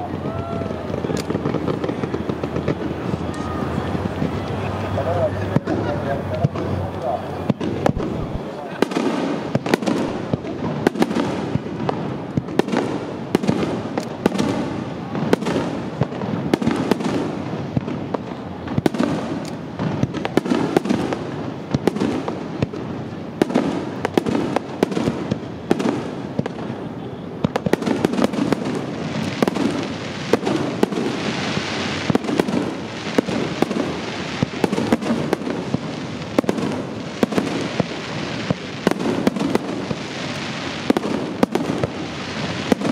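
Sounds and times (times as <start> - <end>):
fireworks bursting: 0.0 - 42.9
fireworks crackling: 0.0 - 42.9.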